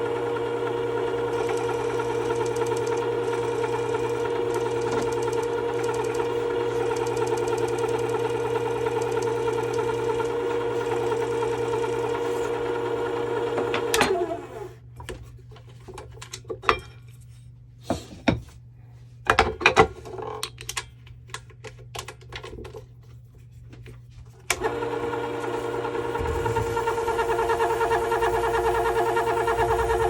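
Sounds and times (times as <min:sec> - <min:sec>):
sharpener motor humming: 0:00.0 - 0:14.7, 0:24.5 - 0:30.0
clicks and knocks of handling: 0:15.0 - 0:17.3, 0:19.3 - 0:23.0.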